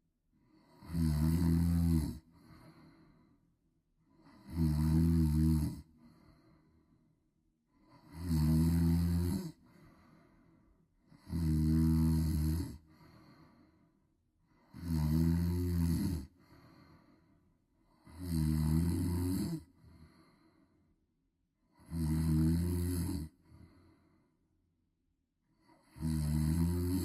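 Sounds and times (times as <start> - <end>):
loud snoring: 0.6 - 2.9, 4.2 - 6.2, 7.8 - 9.8, 11.1 - 13.4, 14.6 - 17.0, 17.9 - 20.3, 21.7 - 23.8, 25.6 - 27.0
faint breath: 2.2 - 4.4, 5.8 - 8.1, 9.6 - 11.2, 12.8 - 14.8, 16.3 - 18.1, 19.6 - 21.0, 23.3 - 24.5.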